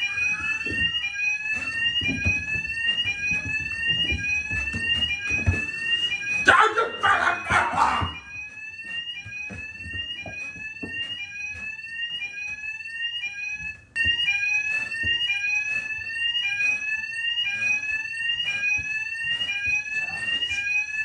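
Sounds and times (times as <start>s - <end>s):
fire alarm sweeping tone: 0.0s - 21.0s.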